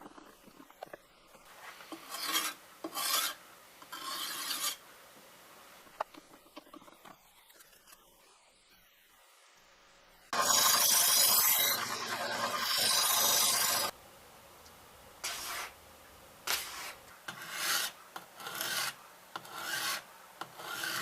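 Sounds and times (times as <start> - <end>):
sharpening stone scraping knife blade: 2.0 - 4.8.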